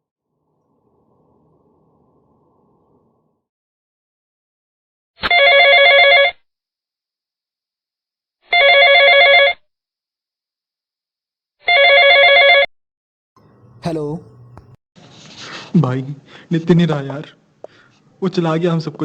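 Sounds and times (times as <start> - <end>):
telephone ringing: 5.2 - 6.4, 8.5 - 9.6, 11.6 - 12.7.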